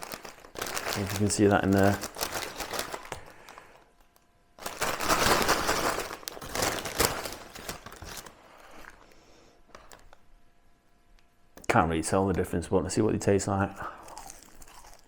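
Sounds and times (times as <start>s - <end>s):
paper bag of fries shaken: 0.0s - 3.8s, 4.6s - 8.7s.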